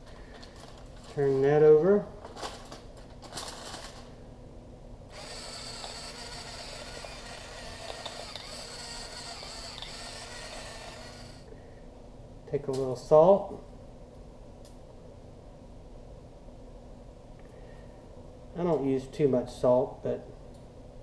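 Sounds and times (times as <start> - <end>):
pepper mill grinding: 5.1 - 11.5.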